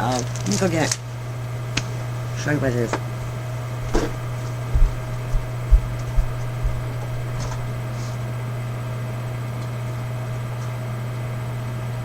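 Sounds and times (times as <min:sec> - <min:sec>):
low hum: 0:01.8 - 0:09.0
footsteps walking away: 0:01.9 - 0:08.3.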